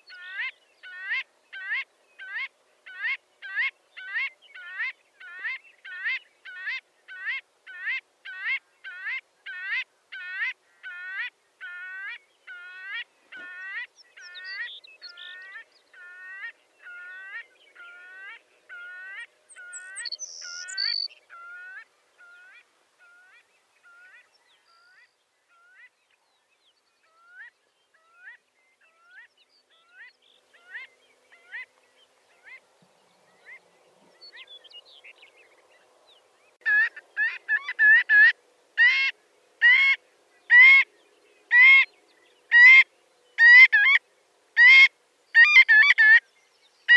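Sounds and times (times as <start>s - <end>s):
shorebird calling: 36.6s - 40.9s, 42.5s - 44.0s, 44.6s - 46.2s.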